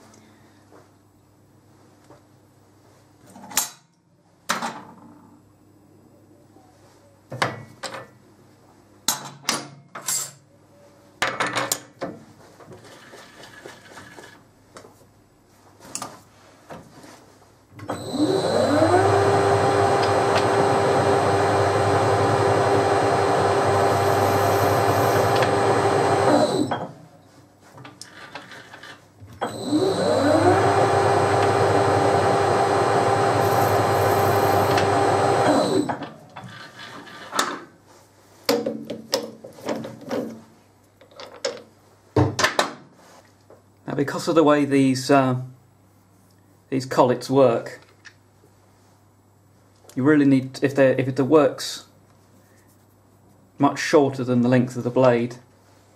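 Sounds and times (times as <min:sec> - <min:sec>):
electric motor whining: 0:17.9 - 0:26.8, 0:29.4 - 0:36.0.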